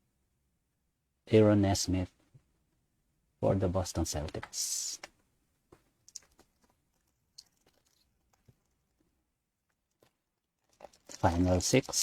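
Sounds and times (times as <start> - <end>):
trading cards clicking and rustling: 5.8 - 9.0.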